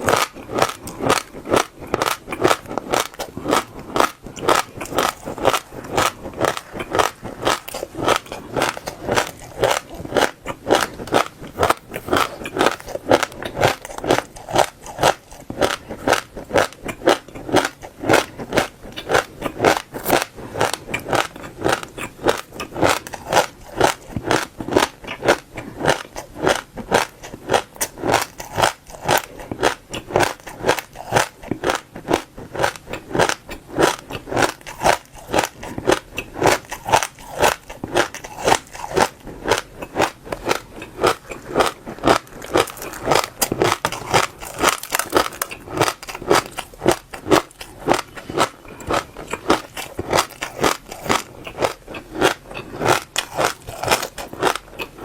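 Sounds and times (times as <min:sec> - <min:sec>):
chewing crunchy seeds: 0:00.0 - 0:55.0.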